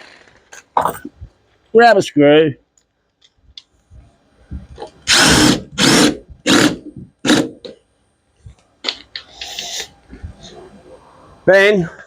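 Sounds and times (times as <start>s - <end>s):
power drill driving screw: 5.1s - 7.7s.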